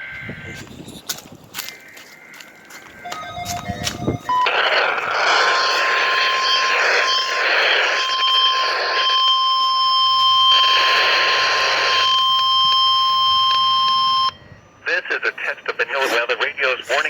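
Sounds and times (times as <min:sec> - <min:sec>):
steady alarm beep: 0:00.0 - 0:00.7, 0:02.8 - 0:14.8
radio static hiss: 0:04.0 - 0:09.4, 0:10.2 - 0:12.3, 0:14.8 - 0:17.0.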